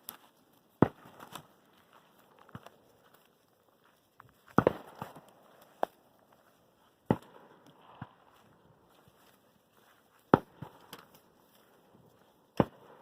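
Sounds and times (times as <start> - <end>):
fireworks pops: 4.5 - 5.9
fireworks bangs: 4.6 - 5.2.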